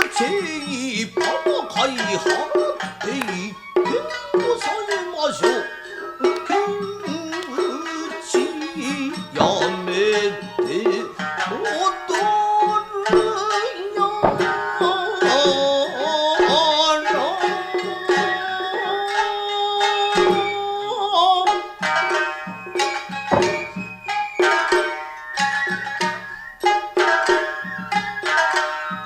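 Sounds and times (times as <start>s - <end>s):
shamisen: 0.0s - 29.0s
wavering sung or flute melody: 0.0s - 29.0s
hand drums striking sharply: 6.2s - 20.7s, 21.5s - 26.2s.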